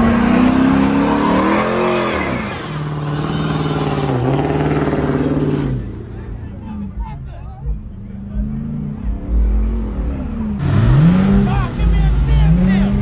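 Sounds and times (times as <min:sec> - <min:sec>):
car engine revving hard: 0:00.0 - 0:06.0, 0:08.6 - 0:13.0.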